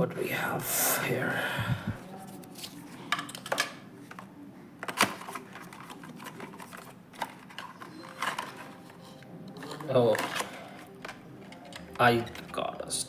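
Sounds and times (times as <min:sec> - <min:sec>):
packaging clicks and snaps: 0:04.8 - 0:12.6.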